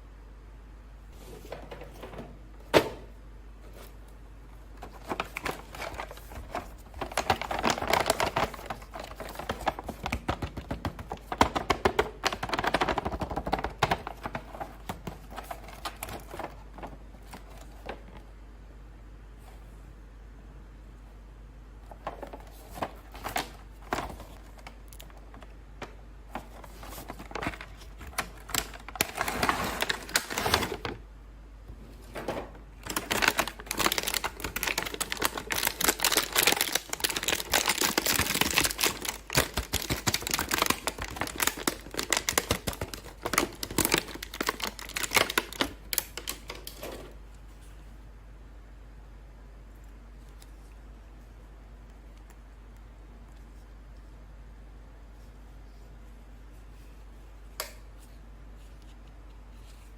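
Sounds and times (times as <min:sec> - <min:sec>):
toy packaging crackling and clicking: 0:04.8 - 0:18.1, 0:22.0 - 0:30.8, 0:32.8 - 0:46.9.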